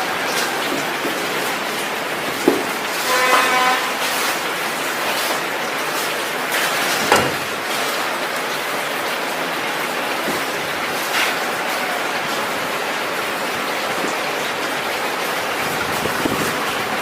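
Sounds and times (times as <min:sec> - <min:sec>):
sharp knock: 0:07.0 - 0:07.6.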